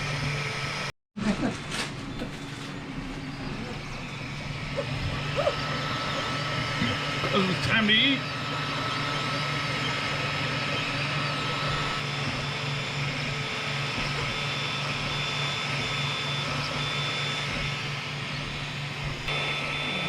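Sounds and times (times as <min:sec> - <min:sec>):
printer hum and whir: 0:01.9 - 0:20.0
high tone switching on and off: 0:04.2 - 0:20.0.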